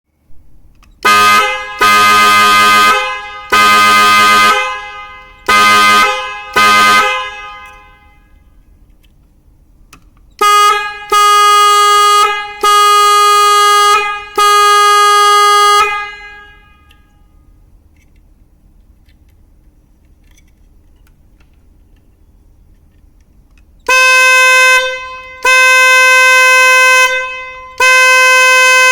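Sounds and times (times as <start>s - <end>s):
car horn honking: 1.0s - 8.7s, 10.4s - 17.6s, 23.8s - 28.9s.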